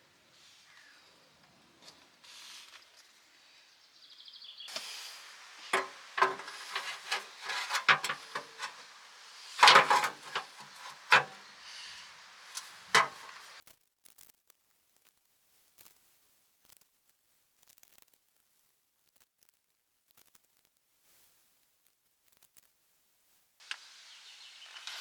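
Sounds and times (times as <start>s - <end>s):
parts and tools clattering: 5.6s - 13.6s
rubbing: 5.6s - 13.6s.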